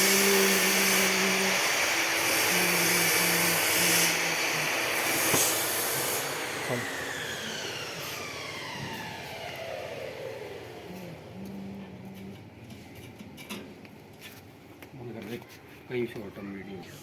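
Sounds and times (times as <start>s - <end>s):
power tool hissing and whining: 0.0s - 11.4s.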